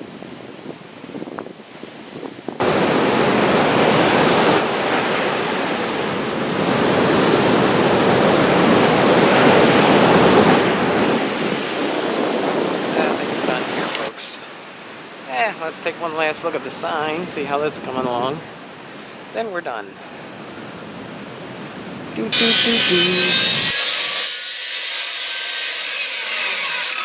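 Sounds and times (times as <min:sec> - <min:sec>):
wind buffeting microphone: 0:00.0 - 0:14.1, 0:20.2 - 0:23.8
ocean surf: 0:02.6 - 0:22.3.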